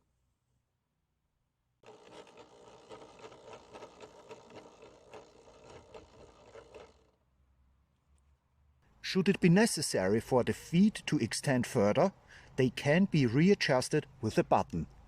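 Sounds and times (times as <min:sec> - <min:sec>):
electric motor whirring with rattle: 0:01.8 - 0:07.2.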